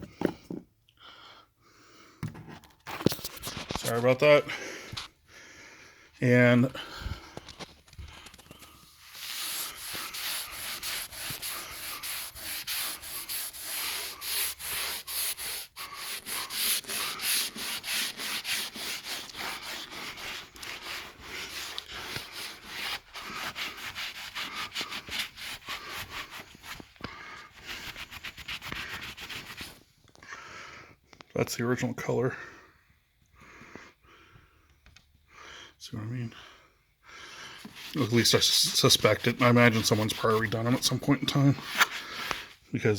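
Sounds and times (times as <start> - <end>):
scrubbing wood finish: 8.6 - 26.8, 37.6 - 42.5.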